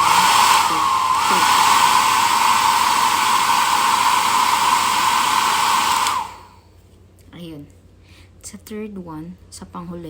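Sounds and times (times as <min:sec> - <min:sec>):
hair dryer running: 0:00.0 - 0:06.6.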